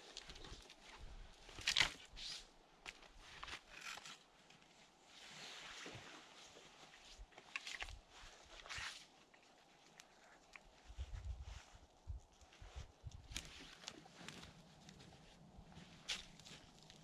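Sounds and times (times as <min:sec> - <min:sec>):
footsteps crunching in snow: 0:11.1 - 0:17.0.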